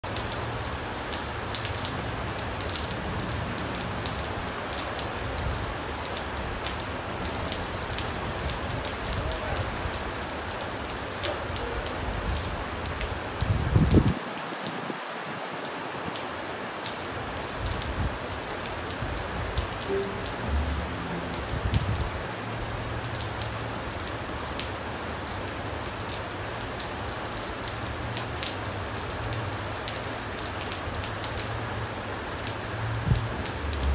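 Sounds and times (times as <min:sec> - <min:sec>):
rain drops ticking on surface: 0:00.0 - 0:33.9
low rumble: 0:20.0 - 0:23.2.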